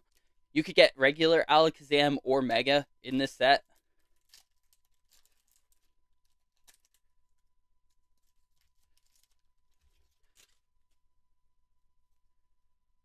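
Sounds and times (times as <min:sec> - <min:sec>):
cards rustling and ticking: 0:03.6 - 0:11.0.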